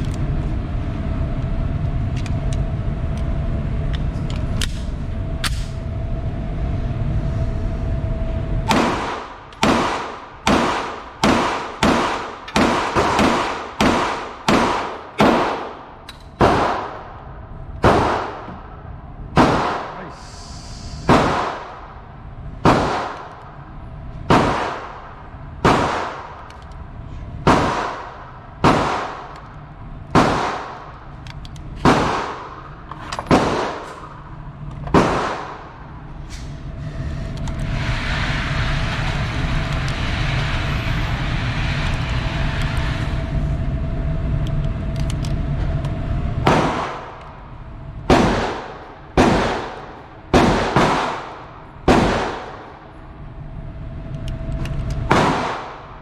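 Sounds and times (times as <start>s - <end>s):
rushing noise with faint whine: 0.0s - 56.0s
echoing gunshots: 8.7s - 20.2s, 21.0s - 23.6s, 24.2s - 26.5s, 27.4s - 29.5s, 30.1s - 31.1s, 31.8s - 36.0s, 46.4s - 52.9s, 55.0s - 56.0s.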